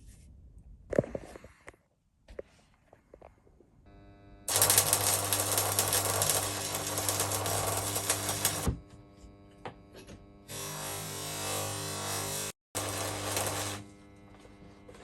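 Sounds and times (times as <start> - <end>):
welder hum: 3.9 - 15.0
welding arc crackling: 4.5 - 8.8, 10.5 - 15.0.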